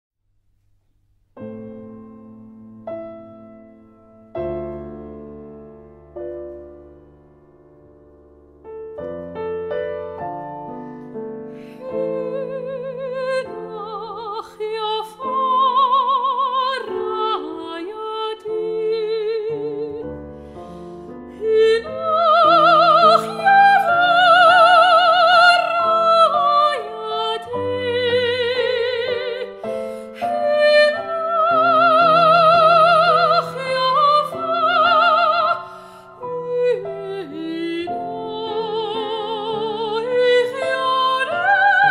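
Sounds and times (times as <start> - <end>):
piano accompaniment: 1.4 - 41.9
soprano singing with vibrato: 11.7 - 20.3, 21.3 - 41.9.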